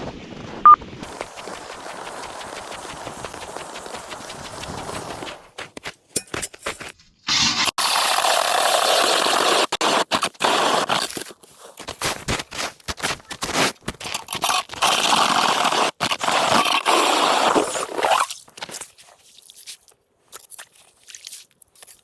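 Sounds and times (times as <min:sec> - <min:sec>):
scraping and crunching of ice: 0:07.4 - 0:22.0.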